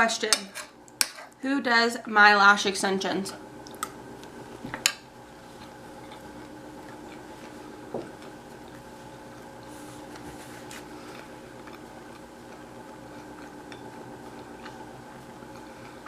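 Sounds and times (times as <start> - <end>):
steady hum: 0.0 - 16.0.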